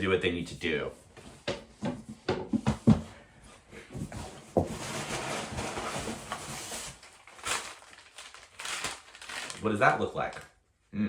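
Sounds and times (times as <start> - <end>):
paper packaging rustling: 4.2 - 10.6.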